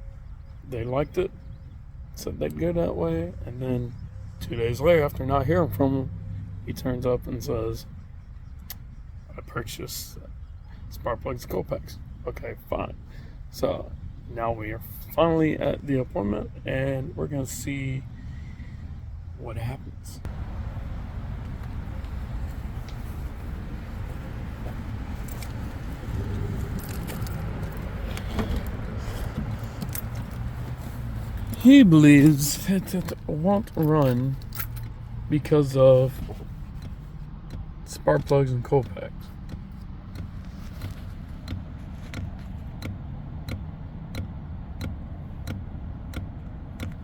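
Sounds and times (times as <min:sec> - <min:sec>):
regular clicking from car: 0:00.0 - 0:47.0
keys jangling: 0:28.6 - 0:30.5, 0:33.0 - 0:34.9.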